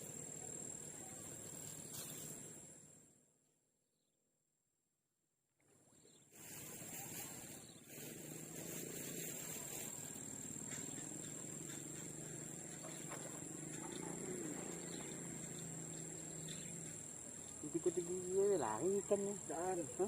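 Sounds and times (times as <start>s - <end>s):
insects chirring: 0.0s - 3.1s, 6.0s - 20.0s
faint outdoor hiss: 0.0s - 3.4s, 5.8s - 20.0s.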